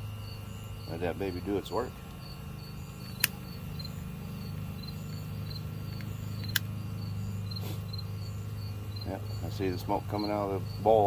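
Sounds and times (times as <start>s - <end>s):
crickets chirping: 0.0s - 11.0s
small fan motor humming: 0.0s - 11.0s
sharp clicks: 3.0s - 3.5s, 5.9s - 6.7s.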